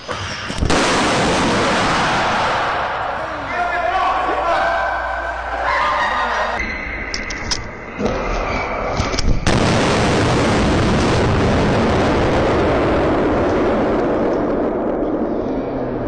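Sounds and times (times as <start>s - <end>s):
explosion blast with rumble: 0.5s - 3.3s, 9.3s - 16.0s.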